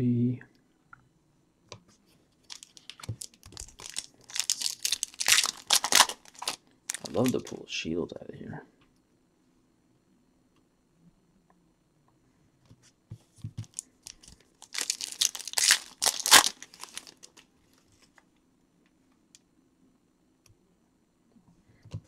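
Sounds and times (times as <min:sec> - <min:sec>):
plastic wrapper tearing and crinkling: 0:02.5 - 0:07.5, 0:13.6 - 0:17.5.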